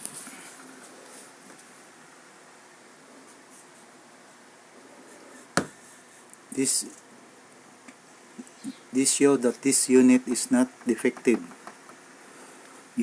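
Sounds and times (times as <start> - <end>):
soft rustles: 0.0 - 1.9
faint steady hiss: 0.0 - 13.0.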